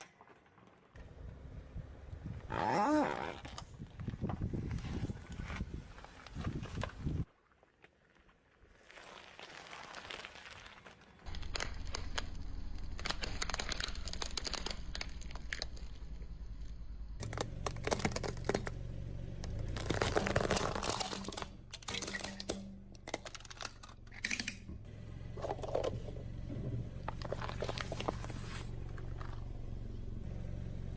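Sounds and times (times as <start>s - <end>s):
objects crunching under car tyres: 2.4s - 16.4s, 17.2s - 24.2s, 25.3s - 30.1s
low engine hum: 11.3s - 30.9s.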